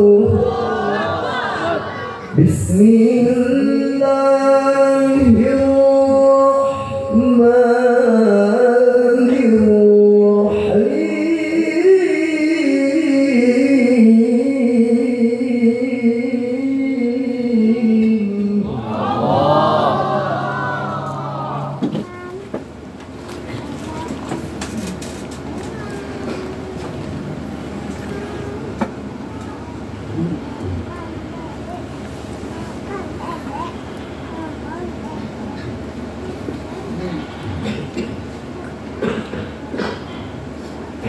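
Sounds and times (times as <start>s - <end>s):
man reciting melodically: 2.3s - 21.8s.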